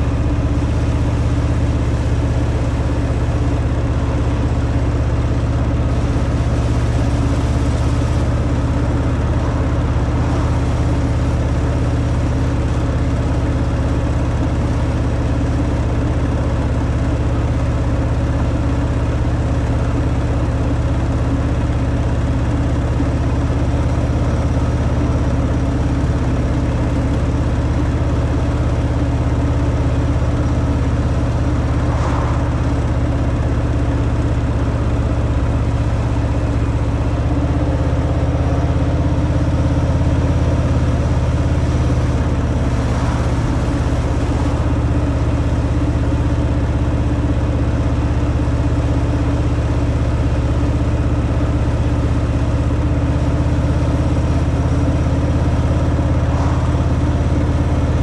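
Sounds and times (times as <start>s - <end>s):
motorcycle engine running steadily: 0.0s - 58.0s.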